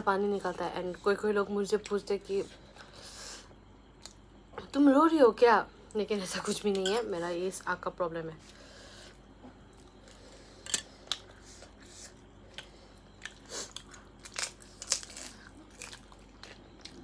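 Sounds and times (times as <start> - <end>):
person chewing crunchy snack: 12.5 - 17.0.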